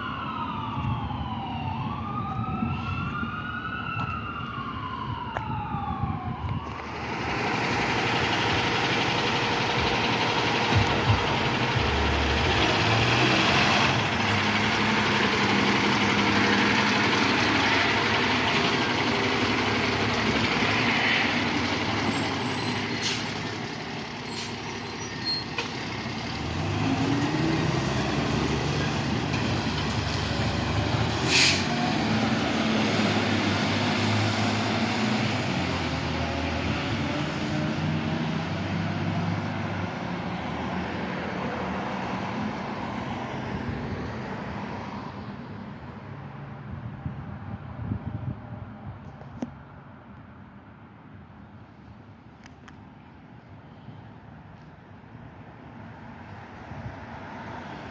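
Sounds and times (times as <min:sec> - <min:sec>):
diesel engine accelerating: 0:04.9 - 0:45.3
air hiss: 0:31.2 - 0:31.8.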